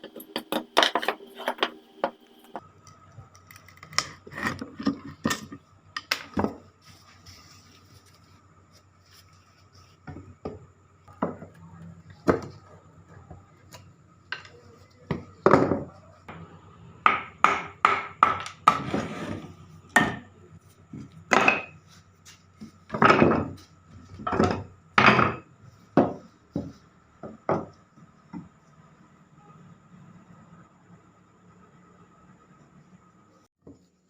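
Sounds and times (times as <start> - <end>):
wooden knocks on table: 0.0 - 2.6.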